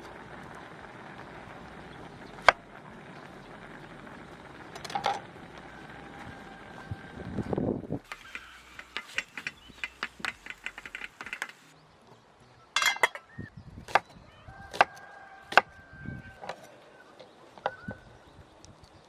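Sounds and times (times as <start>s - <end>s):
light taps: 8.1s - 11.7s.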